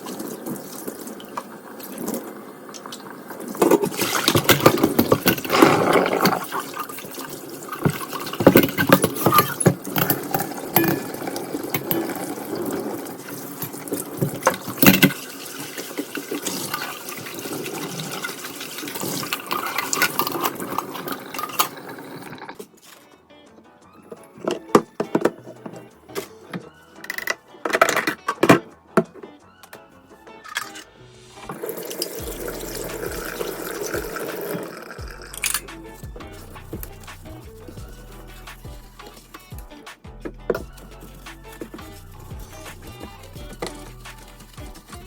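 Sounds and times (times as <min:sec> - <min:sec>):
water running from tap into sink: 0:00.0 - 0:22.6, 0:31.5 - 0:38.0
knocks and clinks of items: 0:07.8 - 0:12.8, 0:13.5 - 0:15.2, 0:24.2 - 0:29.1.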